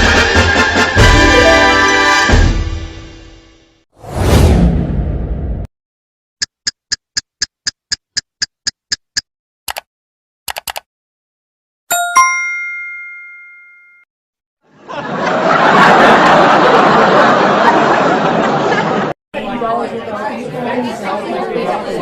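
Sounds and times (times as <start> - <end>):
clock ticking: 6.4 - 9.9
computer mouse clicks: 6.4 - 9.9, 10.5 - 10.9
bright multi-tone ding: 11.9 - 14.1
crowd laughing and chattering: 14.7 - 22.0.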